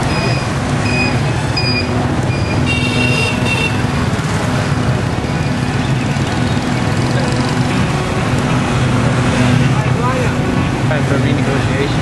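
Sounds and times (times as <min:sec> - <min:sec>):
busy street traffic: 0:00.0 - 0:12.0
car horn toots: 0:02.6 - 0:03.8.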